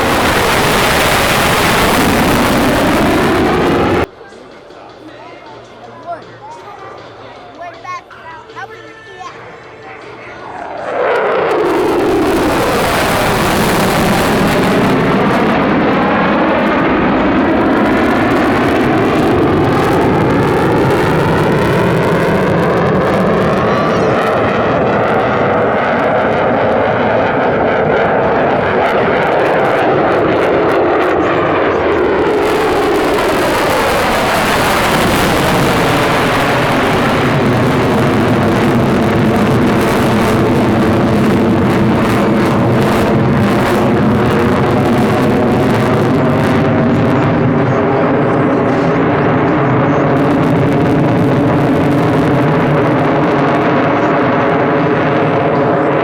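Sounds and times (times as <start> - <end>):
jet engines roaring past: 0.0 - 4.2, 9.5 - 56.0.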